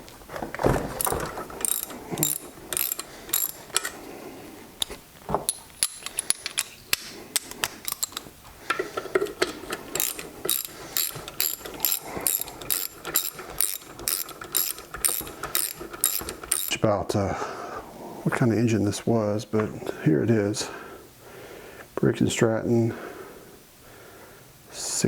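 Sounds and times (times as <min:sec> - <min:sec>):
socket ratchet clicking: 0:01.0 - 0:04.0, 0:04.8 - 0:16.8.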